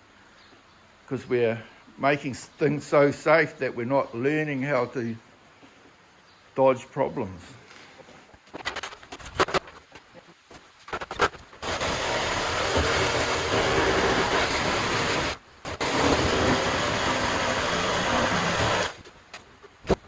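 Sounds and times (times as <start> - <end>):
power tool running: 11.6 - 19.1.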